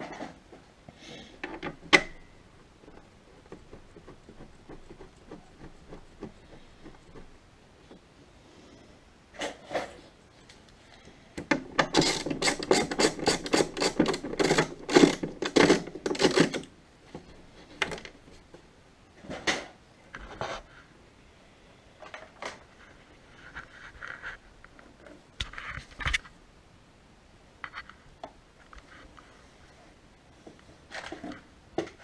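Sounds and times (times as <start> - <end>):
hand tool scraping workpiece: 11.9 - 16.7.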